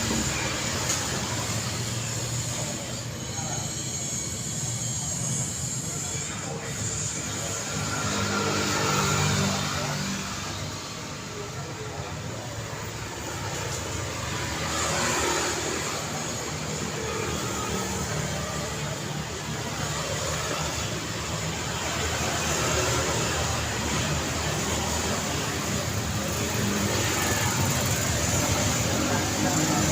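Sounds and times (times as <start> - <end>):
cars and motorcycles driving past: 7.2 - 29.9.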